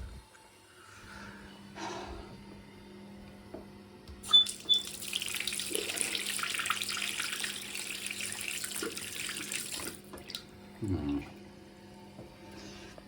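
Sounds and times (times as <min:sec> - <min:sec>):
tap water gushing: 0:04.2 - 0:10.5.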